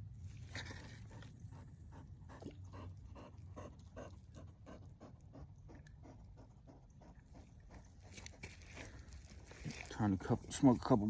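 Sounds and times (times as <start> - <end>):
dog panting: 1.4 - 8.6.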